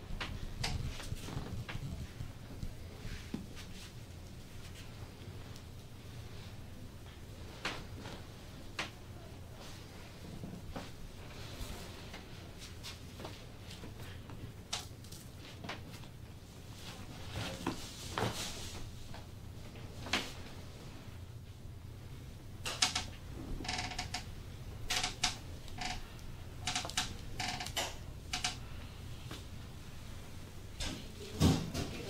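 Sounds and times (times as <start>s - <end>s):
treatment table creaking: 0.2s - 2.0s, 22.6s - 28.9s.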